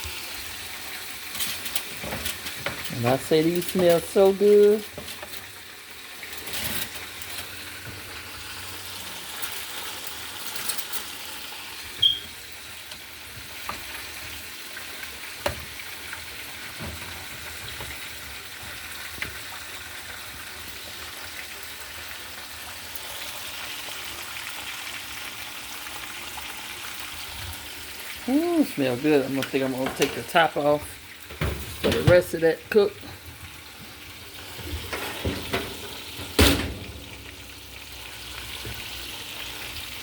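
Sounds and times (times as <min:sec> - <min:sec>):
chicken sizzling in hot oil: 0:00.0 - 0:40.0.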